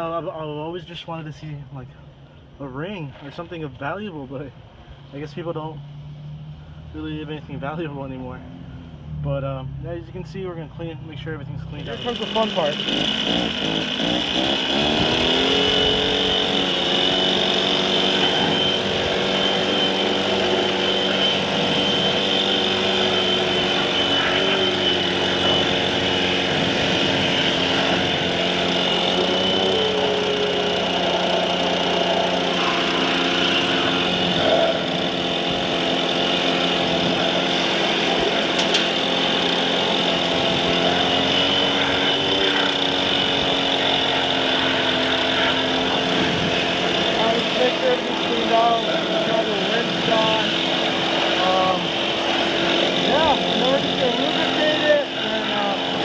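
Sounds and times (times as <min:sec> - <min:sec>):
blower running: 0:11.6 - 0:56.0.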